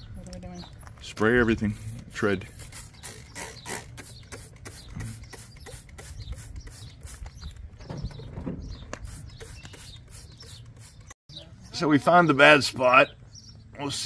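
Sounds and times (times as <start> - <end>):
spray bottle squirting: 1.7 - 7.5, 8.9 - 11.2.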